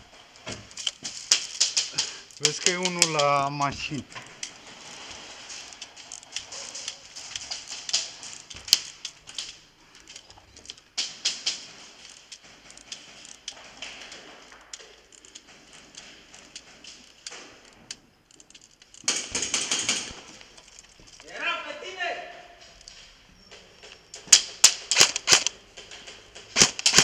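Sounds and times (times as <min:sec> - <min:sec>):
airsoft guns firing: 0:19.0 - 0:20.3, 0:24.2 - 0:27.0.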